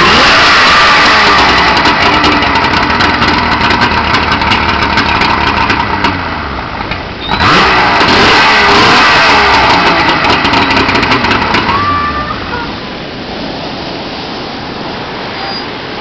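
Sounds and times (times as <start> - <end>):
engine revving: 0.0 - 12.5.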